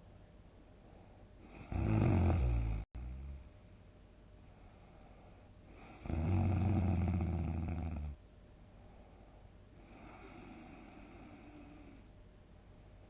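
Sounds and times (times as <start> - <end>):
person snoring: 1.5 - 3.4, 5.8 - 8.2.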